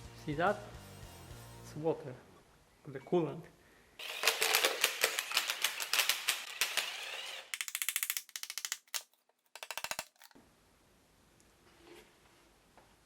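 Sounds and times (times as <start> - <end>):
ratchet wrench clicking: 5.2 - 9.0.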